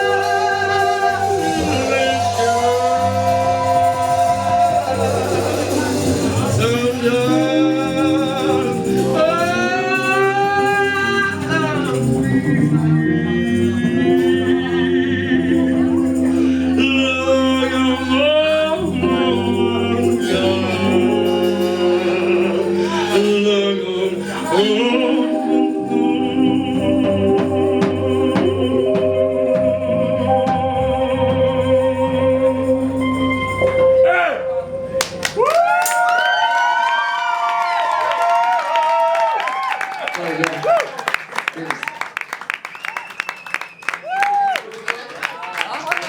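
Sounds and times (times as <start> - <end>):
person singing wordless runs: 0.0 - 32.0
live band playing gospel: 0.0 - 38.5.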